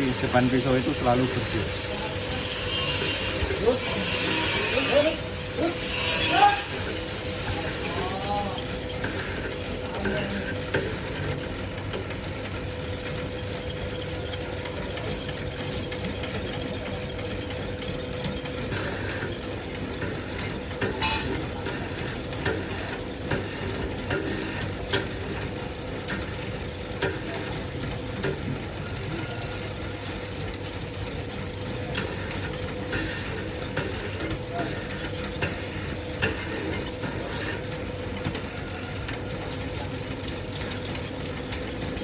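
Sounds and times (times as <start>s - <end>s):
machine clicking and knocking: 8.8s - 42.0s.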